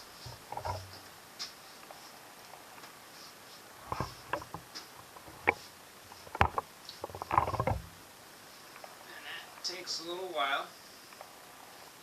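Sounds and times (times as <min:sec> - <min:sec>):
rubbing and knocking: 0:00.2 - 0:01.0, 0:06.2 - 0:07.9.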